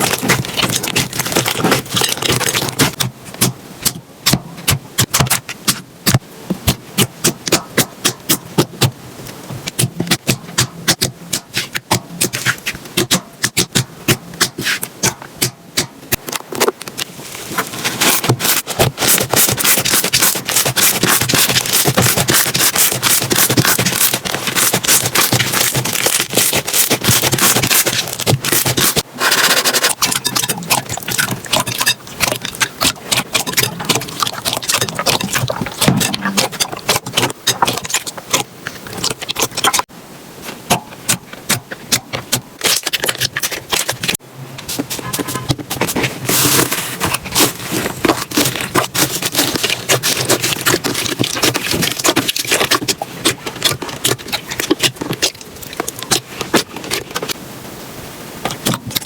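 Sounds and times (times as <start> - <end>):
slime crackling and popping: 0.0 - 3.1, 18.0 - 29.1, 29.8 - 39.9.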